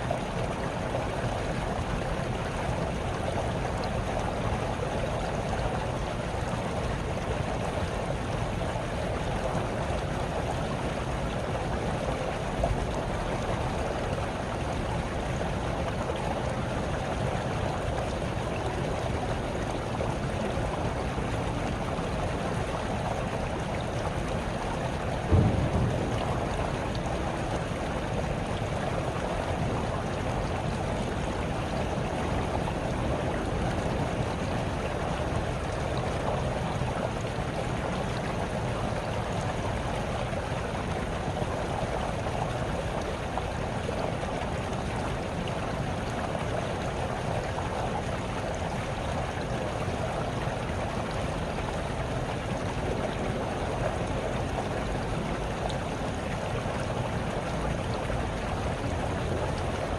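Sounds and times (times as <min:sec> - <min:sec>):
stream babbling over stones: 0:00.0 - 0:59.9.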